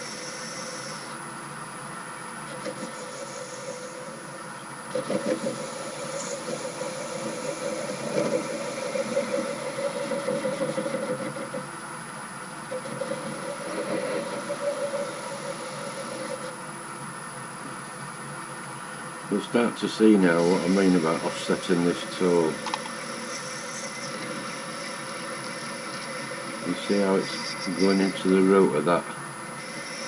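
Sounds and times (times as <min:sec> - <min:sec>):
lathe tool cutting metal: 0:00.0 - 0:01.2, 0:05.0 - 0:11.6, 0:12.7 - 0:16.6, 0:19.3 - 0:30.0
lathe humming: 0:00.0 - 0:30.0.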